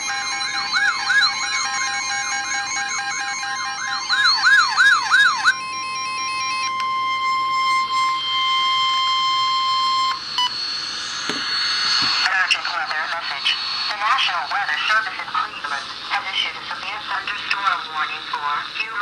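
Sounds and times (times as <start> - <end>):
siren-like warble: 0.0 - 12.2
steady high alarm tone: 0.0 - 12.3.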